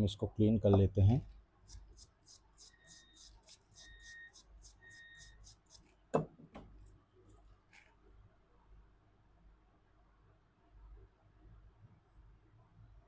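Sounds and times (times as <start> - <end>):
brush scrubbing circuit board: 1.7 - 5.9
short electronic beeps: 2.7 - 5.6
knock on bench: 6.1 - 6.7.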